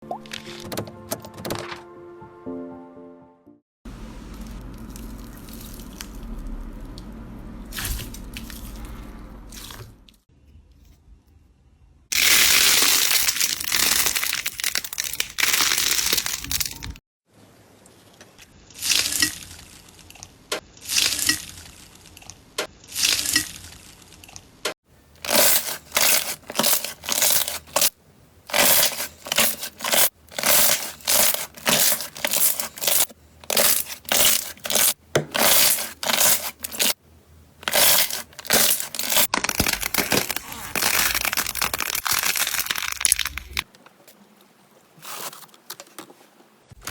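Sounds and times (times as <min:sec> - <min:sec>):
slime crackling and crinkling: 0:12.2 - 0:17.0, 0:25.2 - 0:37.0, 0:37.6 - 0:43.7
slime squeezes: 0:37.6 - 0:43.6.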